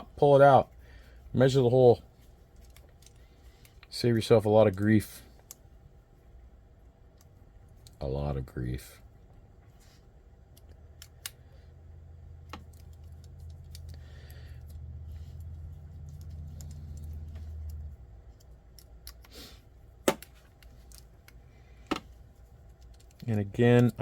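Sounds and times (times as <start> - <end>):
steady low hum: 0.0 - 24.0
small screws and plastic parts clicking: 2.5 - 4.0, 12.4 - 19.4, 20.2 - 24.0.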